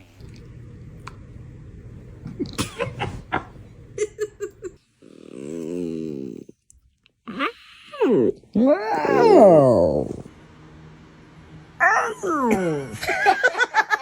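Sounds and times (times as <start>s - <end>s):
person yawning: 7.3s - 10.3s.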